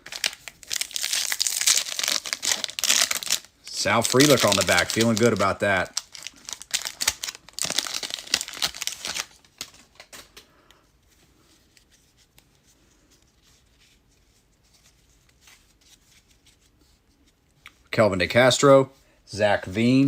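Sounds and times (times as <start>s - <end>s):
foil wrapper crinkling and tearing: 0.0s - 10.1s
cards rustling: 0.0s - 10.4s.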